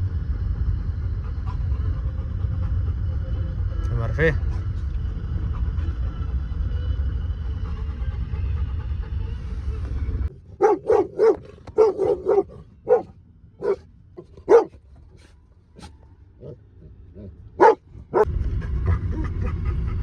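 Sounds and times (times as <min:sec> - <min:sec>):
dog barking: 0:10.6 - 0:18.3.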